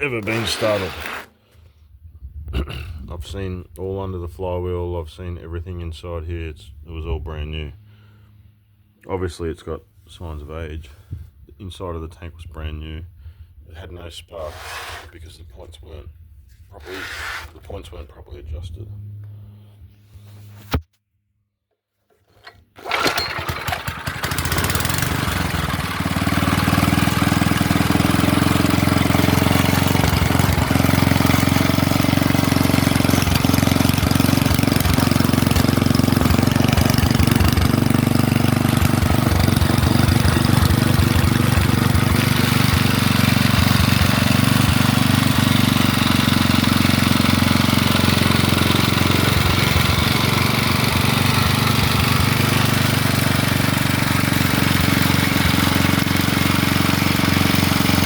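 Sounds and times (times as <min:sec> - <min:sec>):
small engine starting and running: 0:00.0 - 0:01.6, 0:22.1 - 0:58.0.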